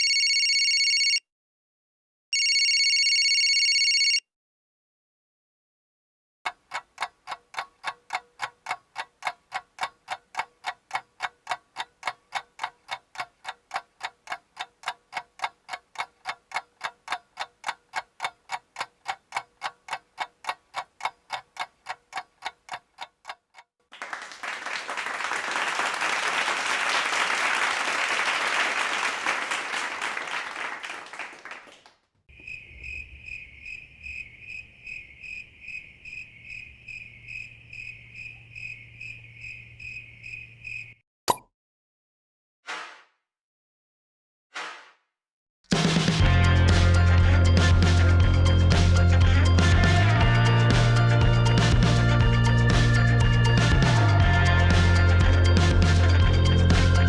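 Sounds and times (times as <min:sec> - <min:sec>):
clock ticking: 0:06.5 - 0:23.7
applause: 0:23.9 - 0:32.0
crickets chirping: 0:32.3 - 0:41.0.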